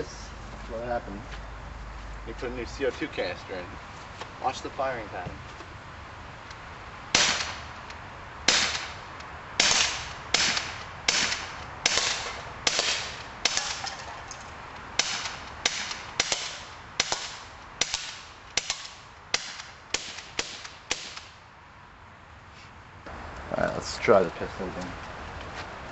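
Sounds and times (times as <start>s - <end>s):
bb pistol shots popping: 7.1s - 7.6s, 8.5s - 9.0s, 9.6s - 14.0s, 15.0s - 21.3s.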